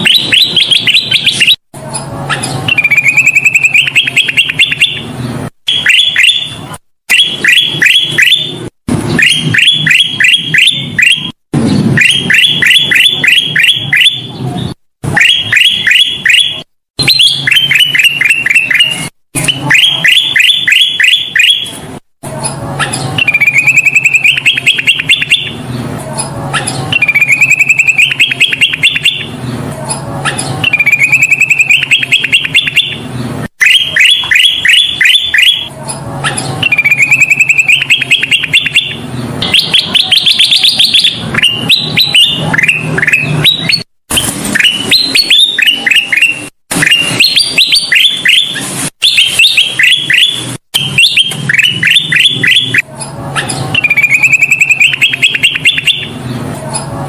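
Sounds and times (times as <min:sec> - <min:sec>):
bird singing rapid notes: 0:00.0 - 0:21.8, 0:22.4 - 0:56.9.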